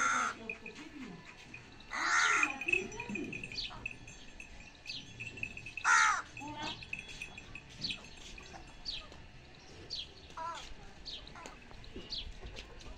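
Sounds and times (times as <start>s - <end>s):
crow cawing: 0.0s - 0.4s, 1.9s - 2.6s, 5.9s - 6.3s
birds chirping: 0.0s - 12.6s.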